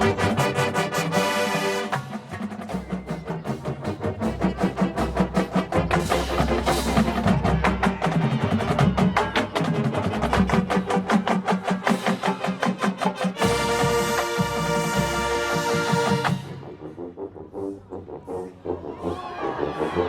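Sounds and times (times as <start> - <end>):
low drums: 0.0 - 12.7.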